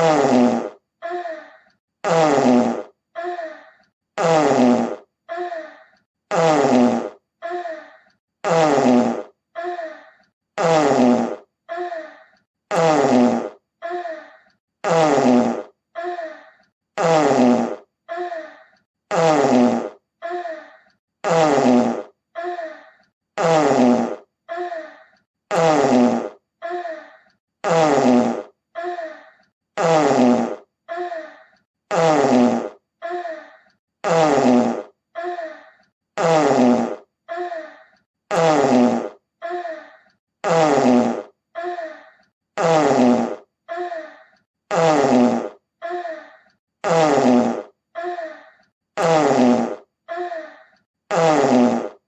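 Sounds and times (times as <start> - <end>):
fart sound effect: 0.0 - 0.8, 2.0 - 3.0, 4.2 - 5.1, 6.3 - 7.2, 8.4 - 9.4, 10.6 - 11.5, 12.7 - 13.6, 14.8 - 15.8, 17.0 - 17.9, 19.1 - 20.0, 21.2 - 22.2, 23.4 - 24.3, 25.5 - 26.4, 27.6 - 28.6, 29.8 - 30.7, 31.9 - 32.8, 34.0 - 35.0, 36.2 - 37.1, 38.3 - 39.2, 40.4 - 41.4, 42.6 - 43.5, 44.7 - 45.6, 46.8 - 47.8, 49.0 - 50.0, 51.1 - 52.0.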